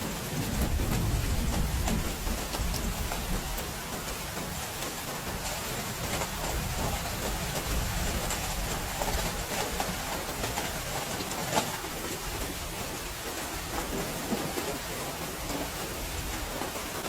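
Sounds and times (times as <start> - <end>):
heavy rain falling: 0.0 - 17.0
louder raindrops ticking: 0.0 - 17.0.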